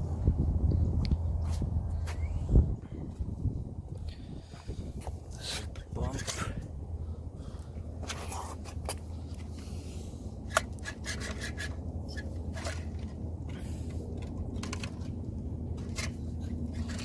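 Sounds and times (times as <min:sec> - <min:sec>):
steady low hum: 0:00.0 - 0:17.0
scraping and rubbing metal parts: 0:10.4 - 0:17.0.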